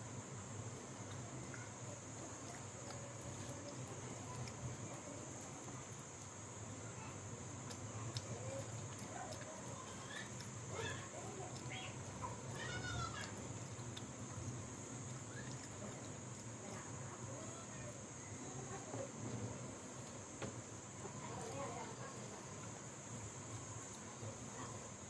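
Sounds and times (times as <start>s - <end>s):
steady high hiss: 0.0s - 25.0s
person chewing and smacking lips: 7.5s - 17.3s.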